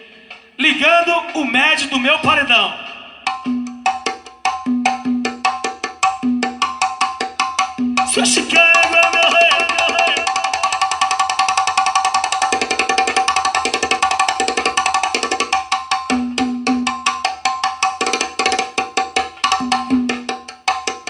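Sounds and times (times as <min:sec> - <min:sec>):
steady held tones: 0:00.0 - 0:05.6, 0:07.7 - 0:11.6, 0:19.5 - 0:20.4
wood-block percussion clicks: 0:03.3 - 0:21.0.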